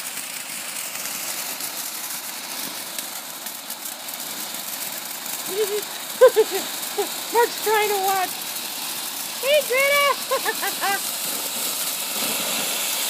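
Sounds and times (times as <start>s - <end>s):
firework hissing and crackling: 0.0s - 13.0s
person speaking: 5.5s - 6.6s, 7.3s - 8.3s, 9.4s - 11.0s.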